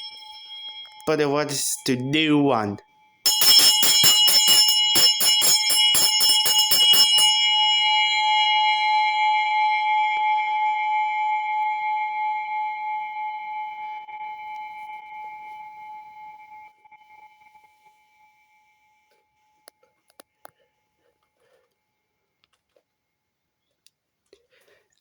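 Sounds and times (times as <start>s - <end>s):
handbell ringing: 0.0s - 1.9s, 3.1s - 12.4s.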